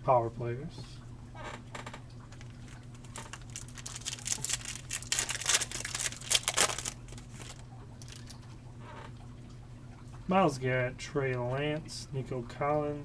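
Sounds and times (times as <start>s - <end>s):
wrapper tearing and crinkling: 2.3s - 8.4s.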